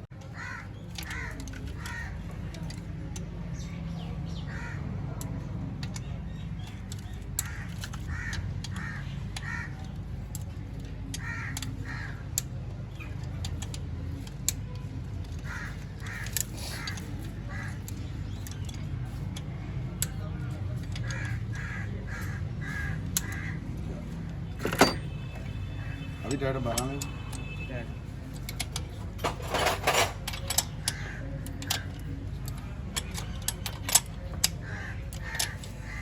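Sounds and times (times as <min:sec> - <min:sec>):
crow cawing: 0:00.3 - 0:02.2, 0:04.5 - 0:04.8, 0:07.4 - 0:10.0, 0:11.2 - 0:12.2, 0:15.5 - 0:17.9, 0:21.0 - 0:23.7, 0:34.6 - 0:36.0.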